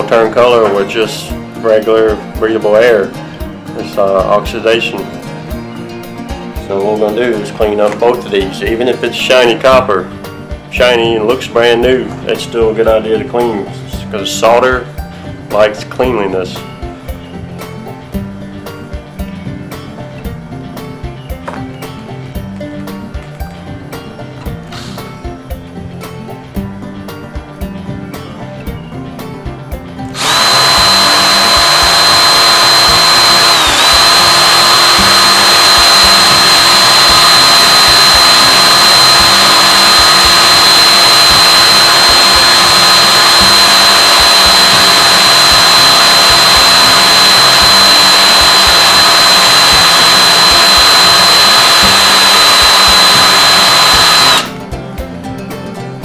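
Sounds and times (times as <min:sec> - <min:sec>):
wire wheel whining: 0:30.2 - 0:54.6.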